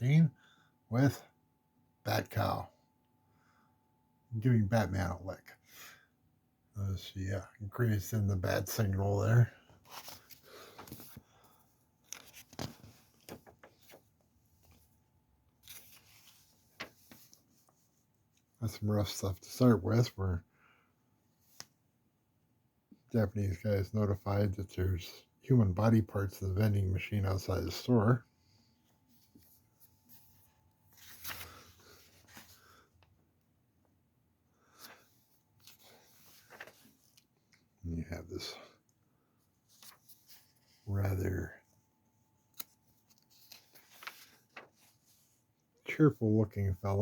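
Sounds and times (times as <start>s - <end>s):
paper pages rustling: 9.7s - 15.0s, 15.6s - 17.9s, 29.0s - 33.1s, 34.7s - 37.6s, 39.6s - 40.9s, 42.3s - 45.4s.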